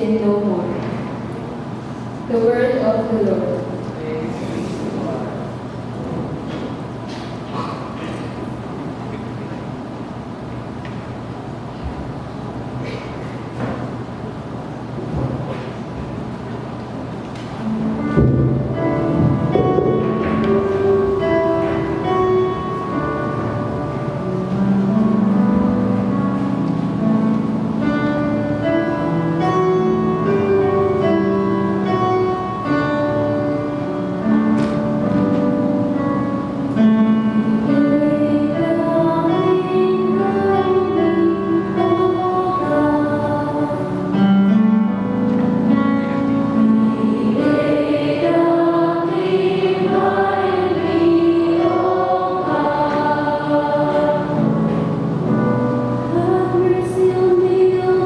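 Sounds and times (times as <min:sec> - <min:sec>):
instrumental accompaniment: 0:17.1 - 0:58.0
choir singing: 0:36.8 - 0:44.5, 0:46.4 - 0:58.0.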